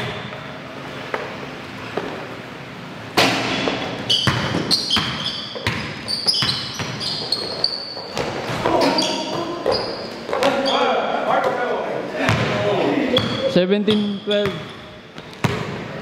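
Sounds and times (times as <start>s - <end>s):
sneakers squeaking on floor: 0.0s - 2.2s, 3.6s - 11.6s, 12.2s - 16.0s
basketball bouncing: 3.2s - 10.6s, 12.2s - 12.6s, 14.4s - 15.9s.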